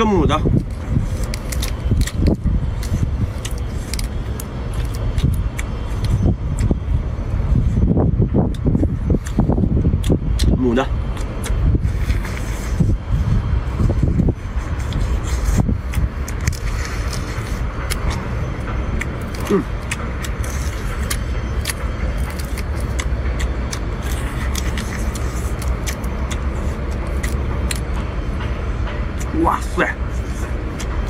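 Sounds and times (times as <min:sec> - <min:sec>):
steady low rumble: 0:00.0 - 0:31.0.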